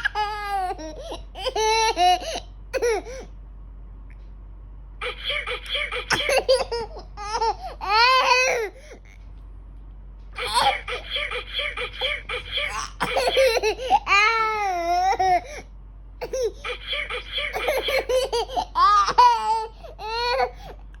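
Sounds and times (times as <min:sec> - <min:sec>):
toddler laughing: 0:00.0 - 0:03.2, 0:05.0 - 0:08.8, 0:10.4 - 0:15.6, 0:16.2 - 0:20.7.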